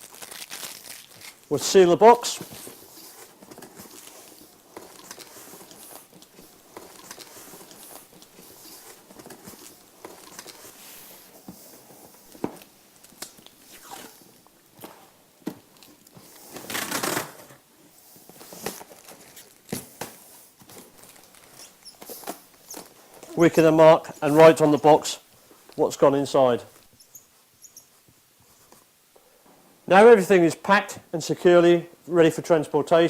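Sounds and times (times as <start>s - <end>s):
packing tape pulled off roll: 0.0s - 1.5s, 2.1s - 15.0s, 15.6s - 17.6s, 18.3s - 23.4s.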